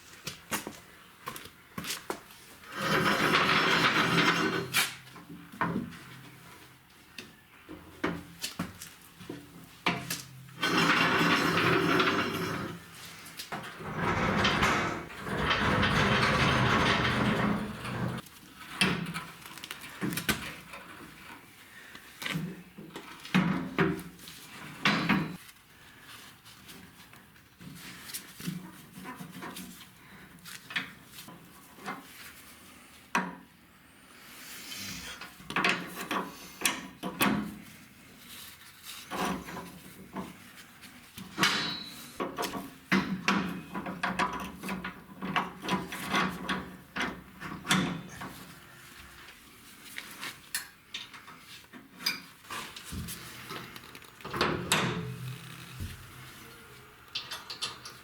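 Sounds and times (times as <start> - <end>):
tools and parts knocking and scraping: 2.7 - 6.2, 7.7 - 19.4, 22.2 - 25.4, 35.2 - 37.6, 39.0 - 40.5, 41.2 - 48.6, 50.4 - 56.4, 57.0 - 58.0.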